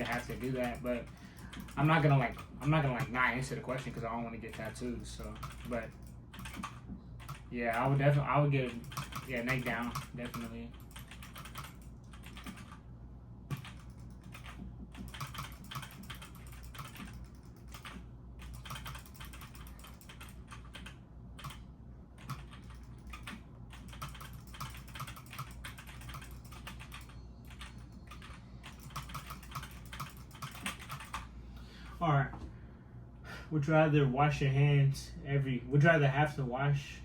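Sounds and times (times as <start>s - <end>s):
typing on computer keyboard: 0.0s - 8.0s, 8.6s - 12.8s, 13.5s - 21.6s, 22.2s - 31.3s
steady low hum: 0.0s - 37.0s.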